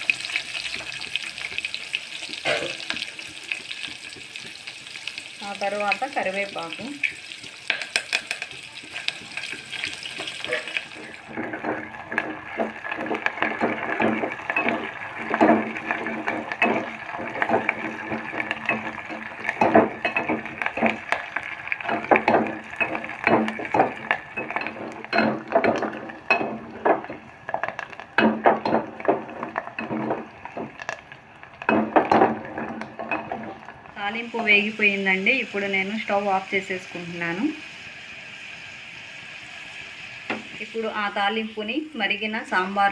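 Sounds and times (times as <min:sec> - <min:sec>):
onions sizzling in hot oil: 0:00.0 - 0:42.9
spoon clinking and scraping pan: 0:07.7 - 0:33.7.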